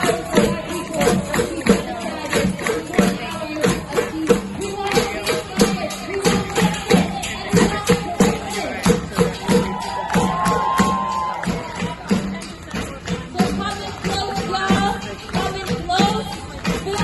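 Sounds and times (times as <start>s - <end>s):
tambourine-like jingles: 0.0s - 17.0s.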